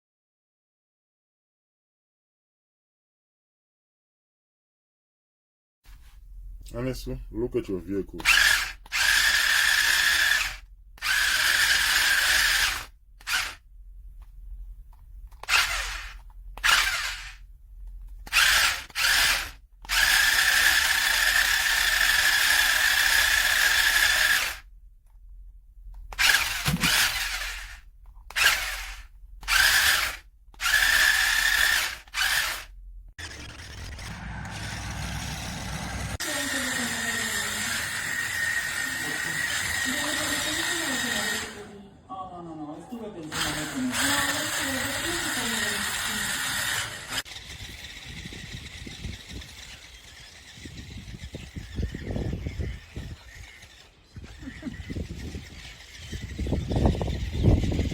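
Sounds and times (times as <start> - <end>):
toy truck electric motors whining: 8.1 - 14.3, 15.3 - 24.7, 25.9 - 41.8, 43.2 - 57.9.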